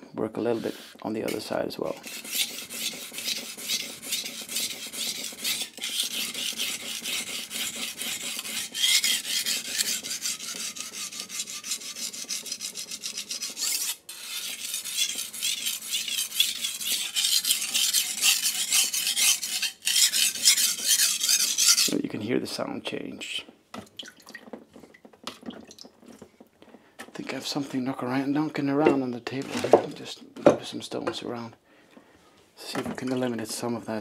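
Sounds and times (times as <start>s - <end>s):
knife scraping on whetstone: 0.4s - 22.0s.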